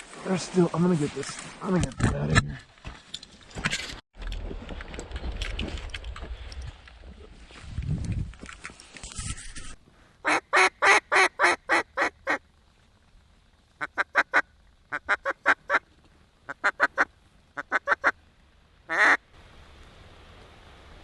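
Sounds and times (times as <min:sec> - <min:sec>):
duck call quacks: 0:10.2 - 0:12.4, 0:16.5 - 0:18.2, 0:18.9 - 0:19.2.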